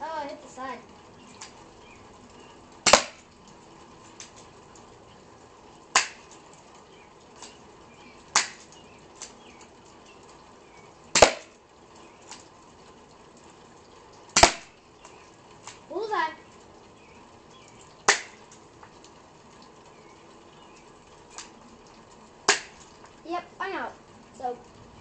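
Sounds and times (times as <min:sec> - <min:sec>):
airsoft pistol shots: 0:02.9 - 0:03.2, 0:11.2 - 0:11.5, 0:14.4 - 0:14.7.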